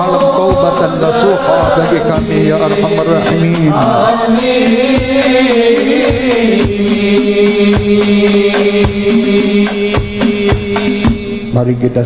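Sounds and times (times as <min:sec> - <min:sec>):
person chanting: 0:00.0 - 0:09.6
drum beats: 0:00.0 - 0:12.0.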